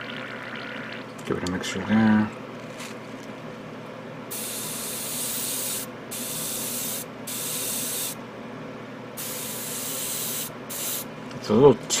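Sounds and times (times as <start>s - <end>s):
steady low hum: 0.0s - 12.0s
airbrush spraying hiss: 4.3s - 8.2s, 9.2s - 11.1s.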